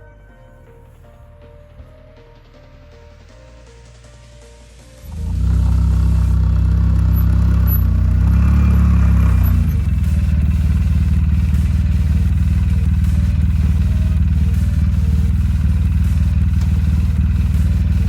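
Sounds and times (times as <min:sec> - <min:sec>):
vehicle engine running: 0:05.0 - 0:18.0.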